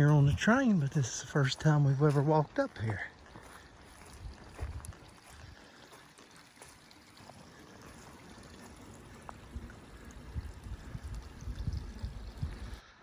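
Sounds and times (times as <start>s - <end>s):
wind buffeting microphone: 4.1s - 5.6s, 9.4s - 12.8s.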